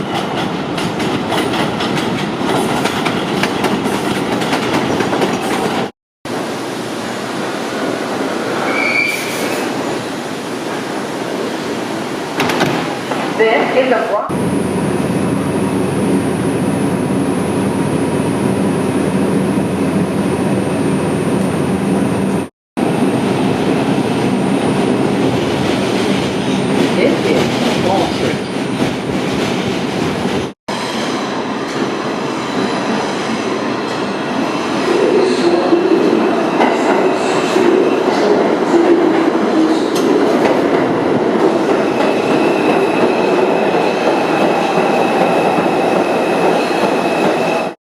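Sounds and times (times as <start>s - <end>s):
subway train rumbling on rails: 0.0s - 47.8s
high wheel squeal: 8.6s - 9.7s.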